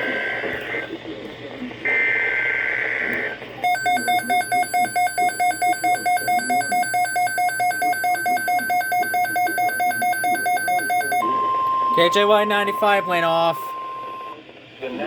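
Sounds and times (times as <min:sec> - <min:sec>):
rapid electronic beeping: 0:03.6 - 0:14.4.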